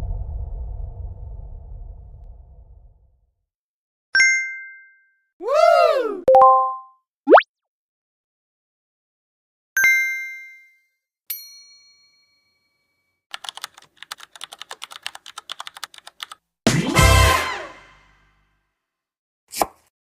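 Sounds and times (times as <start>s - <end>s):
loud noisy hit: 0.0s - 3.0s
keyboard typing clicks: 13.3s - 16.4s.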